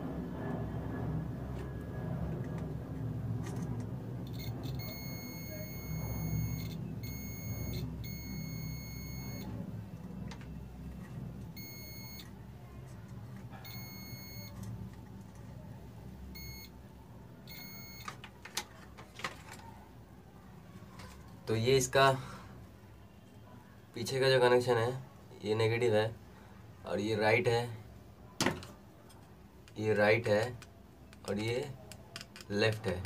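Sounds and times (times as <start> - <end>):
steady low hum: 0.0 - 18.1
multimeter continuity buzzer beeping: 4.3 - 9.5, 11.5 - 12.3, 13.6 - 14.6, 16.4 - 16.8, 17.5 - 18.1.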